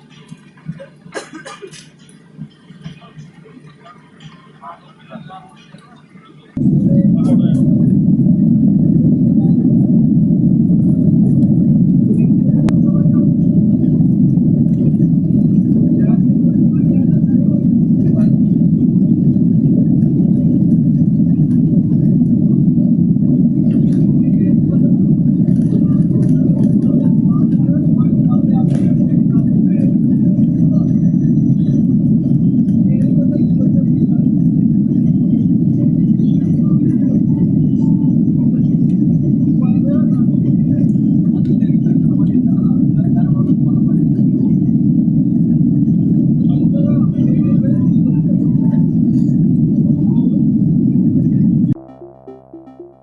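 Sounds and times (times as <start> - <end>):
airliner cabin rumble: 0.0 - 53.0.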